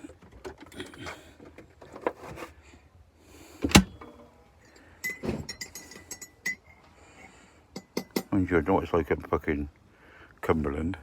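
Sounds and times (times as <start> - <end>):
small clicks and clinks: 4.6 - 6.8, 7.7 - 8.4.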